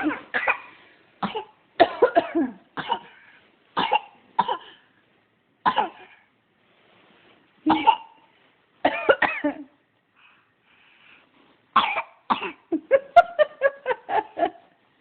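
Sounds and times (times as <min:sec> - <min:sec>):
person coughing: 0:00.0 - 0:03.2, 0:07.7 - 0:08.2, 0:08.9 - 0:09.8, 0:11.8 - 0:12.8.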